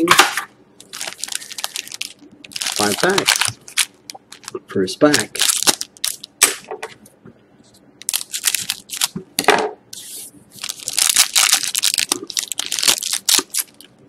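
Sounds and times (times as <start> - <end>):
card pack wrapper tearing: 0.8 - 6.3, 8.0 - 9.1, 10.6 - 13.9.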